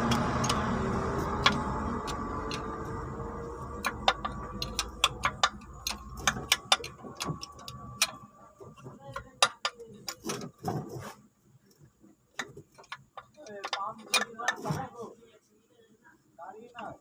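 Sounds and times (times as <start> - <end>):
metallic clicks of hand tools: 0.0 - 8.2
low steady hum: 0.0 - 10.6.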